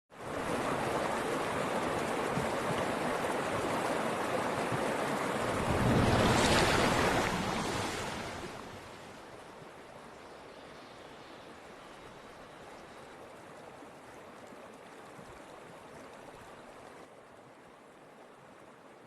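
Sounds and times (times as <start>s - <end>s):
rushing water: 0.1s - 19.0s.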